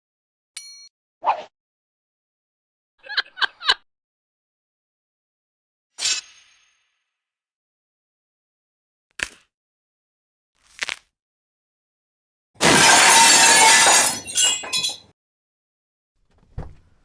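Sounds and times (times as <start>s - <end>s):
glass pieces tinkling: 12.6s - 15.1s
glass shattering: 12.6s - 15.1s
glass clinks: 12.9s - 15.1s.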